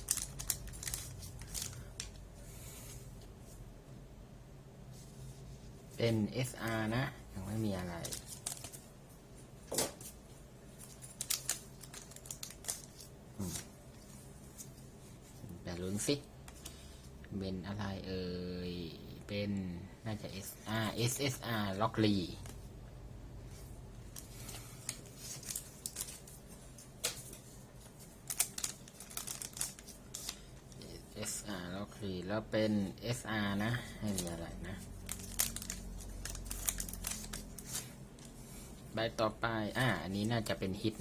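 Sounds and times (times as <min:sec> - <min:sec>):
trading cards clicking and rustling: 0:00.0 - 0:02.2, 0:07.6 - 0:08.8, 0:10.8 - 0:14.8, 0:24.1 - 0:31.4, 0:34.0 - 0:38.4.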